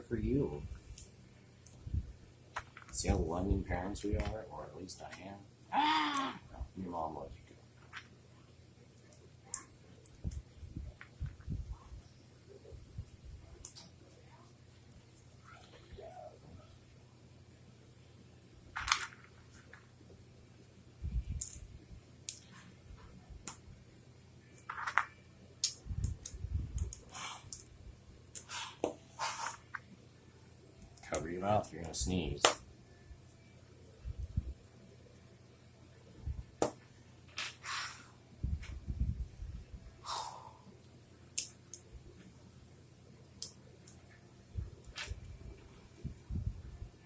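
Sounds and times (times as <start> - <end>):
plastic pieces snapping together: 24.6 - 27.7.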